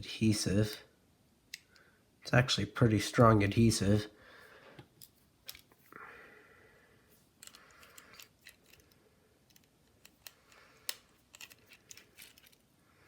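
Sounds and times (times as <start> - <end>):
small tools clicking and scraping: 7.4 - 12.7.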